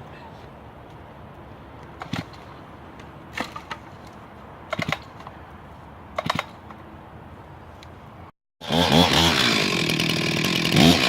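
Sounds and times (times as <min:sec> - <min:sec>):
outdoor background noise: 0:00.0 - 0:11.0
sharp knocks and clunks: 0:03.3 - 0:05.4, 0:06.1 - 0:06.8.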